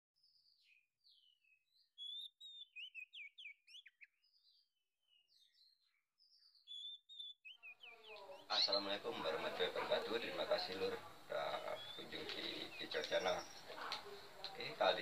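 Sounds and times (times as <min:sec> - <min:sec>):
songbird chirping and whistling: 0:00.2 - 0:09.0, 0:11.4 - 0:13.8.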